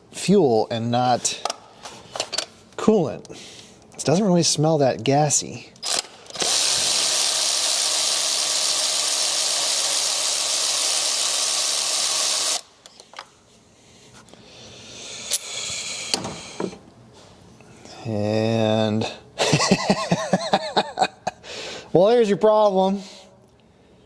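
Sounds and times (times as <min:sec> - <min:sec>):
cordless power tool running: 0:06.4 - 0:12.7.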